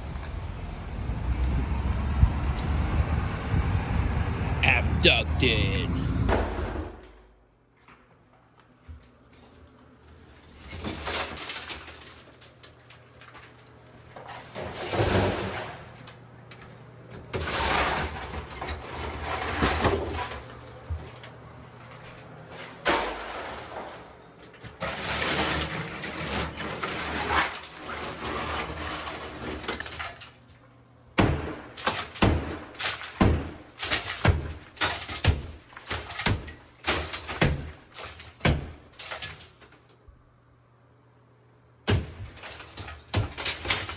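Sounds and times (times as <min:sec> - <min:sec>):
sharp hammer strikes: 0:31.2 - 0:33.6.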